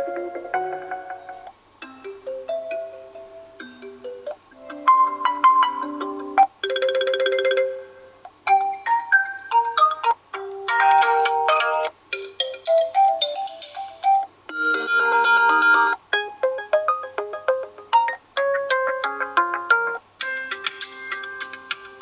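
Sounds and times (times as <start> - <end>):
phone ringtone melodies: 0.0 - 22.0.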